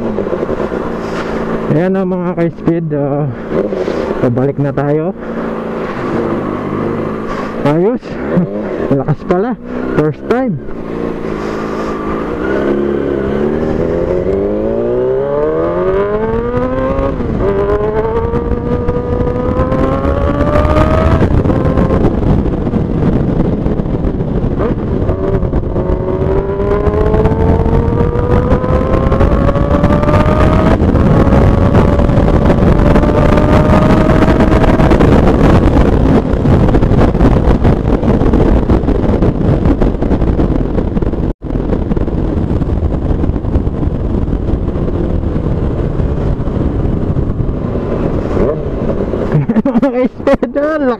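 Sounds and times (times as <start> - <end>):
motorcycle accelerating through gears: 0.0 - 1.9, 3.3 - 49.4
wind rushing: 0.0 - 50.9.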